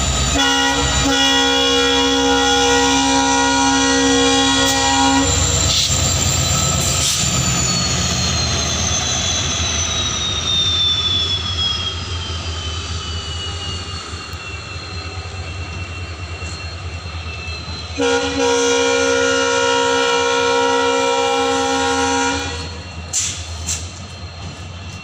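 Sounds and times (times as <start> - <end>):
diesel engine drone and whine: 0.0 - 25.0
locomotive horn blast: 0.2 - 5.9, 18.0 - 22.8.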